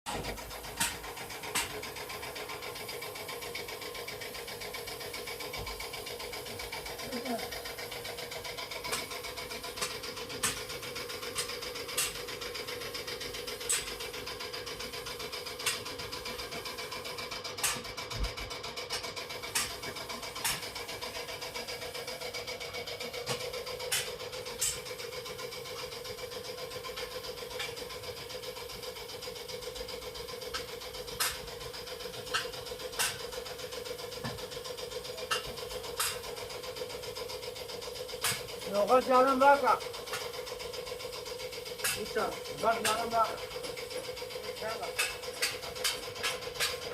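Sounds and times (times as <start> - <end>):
car engine idling: 19.1 - 46.9.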